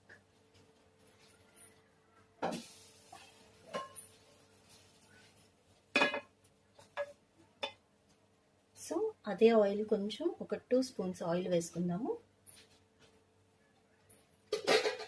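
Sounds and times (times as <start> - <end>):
metal pans clanking: 3.6 - 4.1, 5.9 - 7.2, 14.5 - 15.0.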